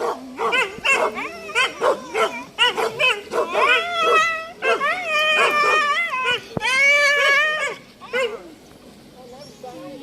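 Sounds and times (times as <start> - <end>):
hunting dogs yelping and baying: 0.0 - 8.5
dog howling: 0.4 - 8.4.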